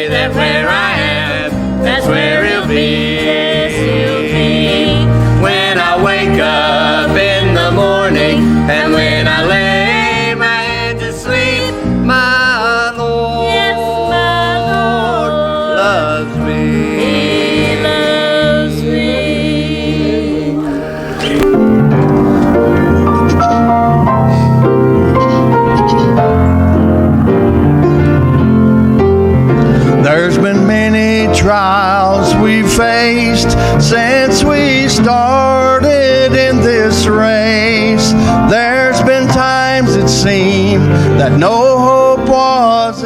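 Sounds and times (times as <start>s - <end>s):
gospel singing: 0.0s - 43.0s
piano: 0.0s - 43.0s
instrumental accompaniment: 15.7s - 41.4s.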